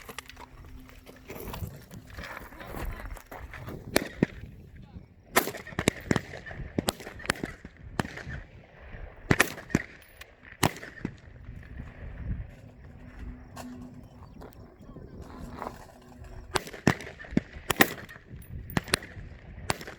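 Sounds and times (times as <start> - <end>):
rifle shots: 5.3 - 8.6, 9.2 - 12.0, 16.5 - 19.9.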